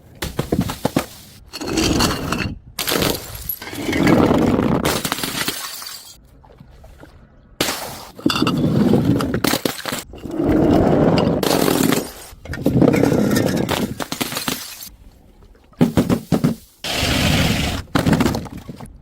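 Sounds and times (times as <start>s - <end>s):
glass bottles shattering: 1.5s - 4.1s, 4.8s - 6.2s, 7.6s - 10.1s
glass crunching: 1.6s - 6.2s.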